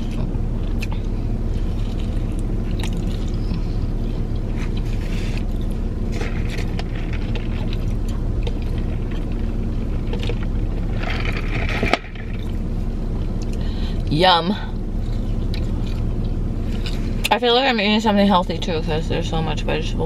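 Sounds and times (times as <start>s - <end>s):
person chewing food: 0.0s - 13.7s, 15.0s - 17.3s
car engine running: 0.0s - 20.0s.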